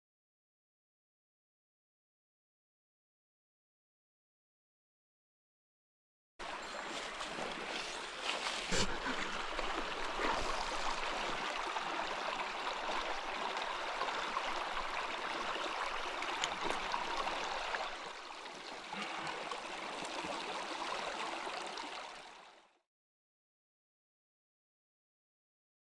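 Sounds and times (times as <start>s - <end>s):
flowing stream: 6.4s - 22.8s.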